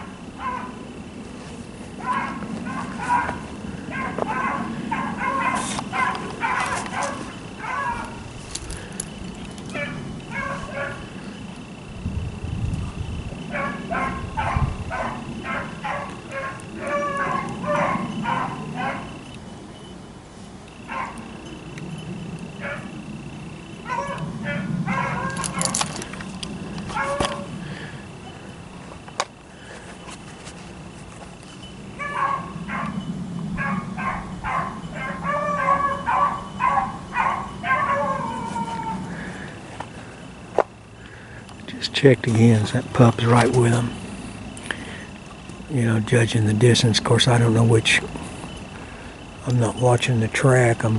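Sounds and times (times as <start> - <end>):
beagles barking: 0.0 - 1.0, 1.8 - 11.9, 13.3 - 20.0, 20.7 - 29.4, 31.4 - 41.4.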